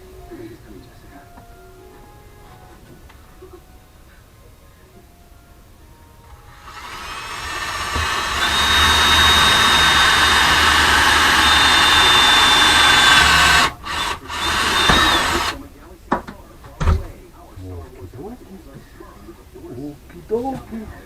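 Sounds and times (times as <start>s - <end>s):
electric drill whining: 6.5s - 15.6s.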